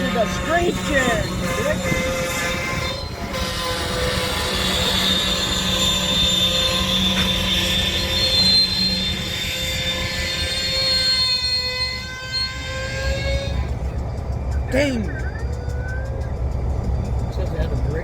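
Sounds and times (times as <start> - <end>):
railcar wheels screeching: 0.0 - 18.0.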